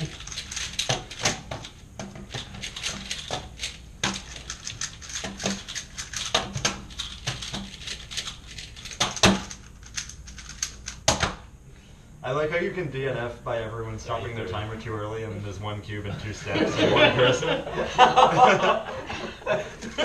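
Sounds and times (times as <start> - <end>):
plastic puzzle cubes clicking: 0.0 - 11.3.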